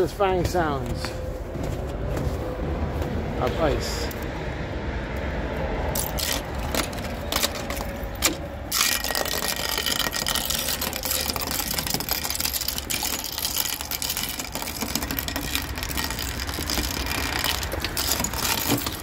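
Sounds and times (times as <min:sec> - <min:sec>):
ice cracking and crackling: 0:05.9 - 0:19.0.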